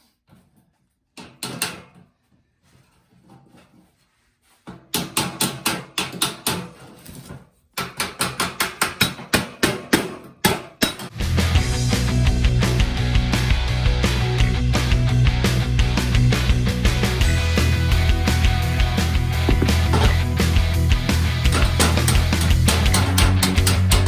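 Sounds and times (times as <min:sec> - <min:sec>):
rock music: 0:11.2 - 0:24.0.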